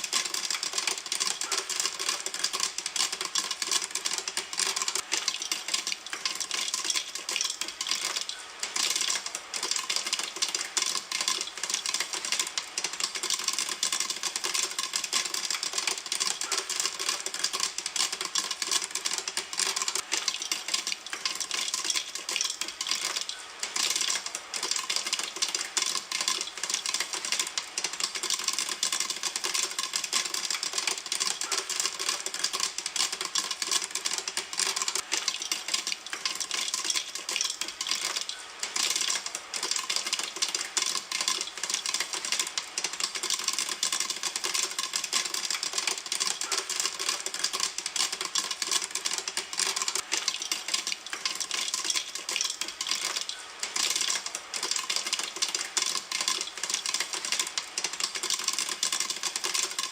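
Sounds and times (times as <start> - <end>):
popcorn popping in a pan: 0.0 - 59.9.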